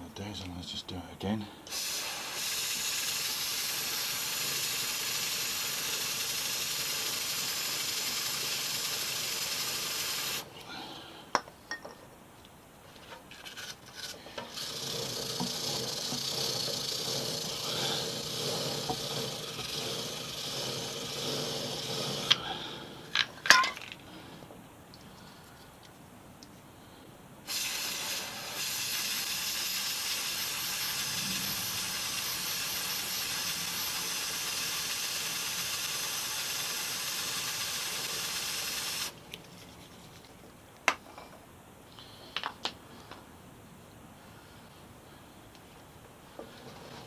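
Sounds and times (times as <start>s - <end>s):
aerosol spray hissing: 1.7s - 10.4s, 27.5s - 39.2s
brush scrubbing chain: 13.3s - 22.4s.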